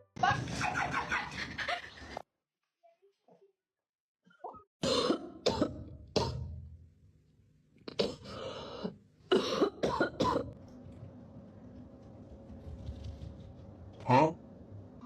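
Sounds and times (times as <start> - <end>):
person coughing: 4.8 - 6.5, 7.9 - 8.4, 9.3 - 10.6.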